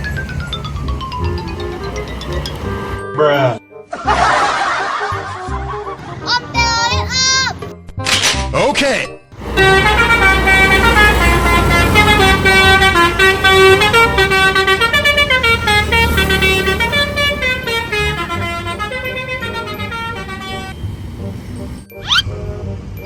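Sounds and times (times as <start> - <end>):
low engine rumble: 0.0 - 3.0, 9.4 - 23.0
multi-tone air horn melody: 9.4 - 21.6.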